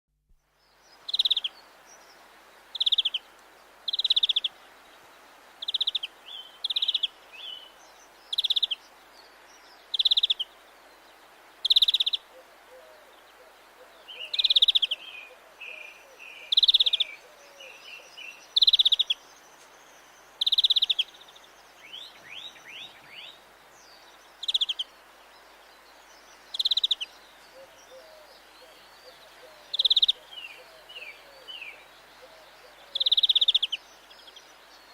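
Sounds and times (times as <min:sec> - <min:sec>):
bird twittering: 0:01.1 - 0:01.5, 0:14.1 - 0:19.2, 0:20.4 - 0:21.2, 0:26.5 - 0:33.8.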